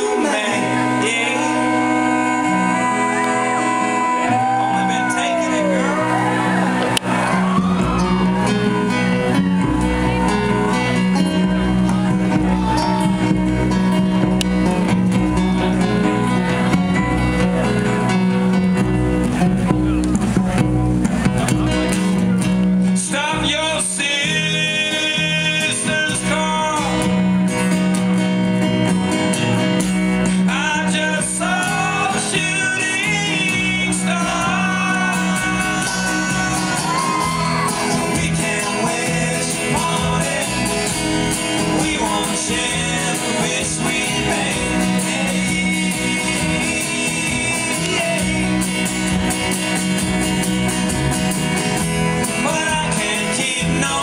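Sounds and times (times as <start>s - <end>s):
person singing: 0.0s - 14.3s, 22.9s - 27.2s, 30.4s - 49.3s, 52.2s - 54.0s
band playing acoustic folk song: 0.0s - 54.0s.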